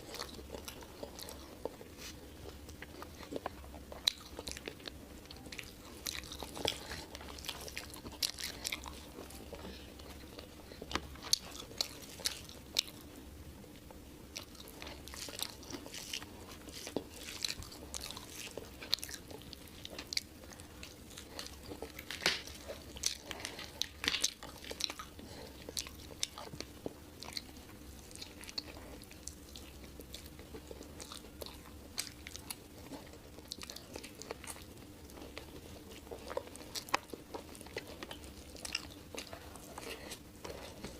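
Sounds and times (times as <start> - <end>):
chewing food: 0.0 - 40.9
faint steady hum: 0.0 - 40.9.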